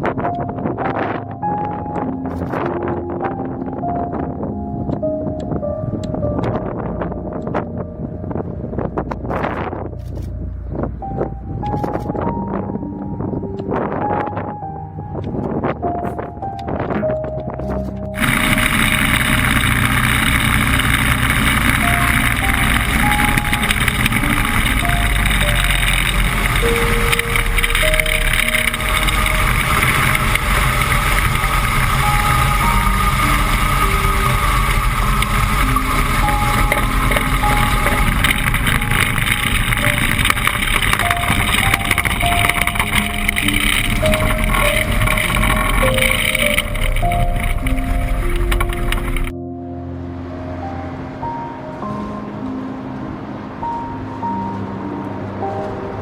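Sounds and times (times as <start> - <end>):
background music with held melody: 0.0 - 56.0
loud steady rushing noise: 18.1 - 56.0.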